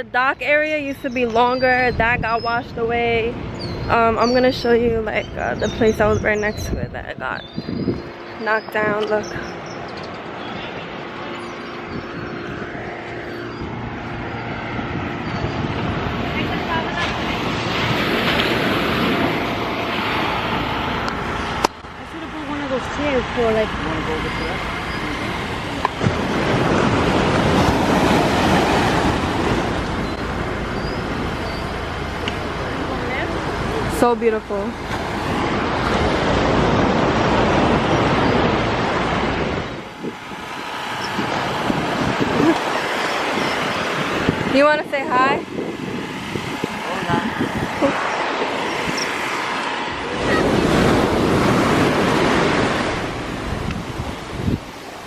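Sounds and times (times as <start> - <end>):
wind rumbling on microphone: 0.0 - 55.0
ocean surf breaking: 8.0 - 55.0
sea waves washing onto beach: 15.7 - 55.0.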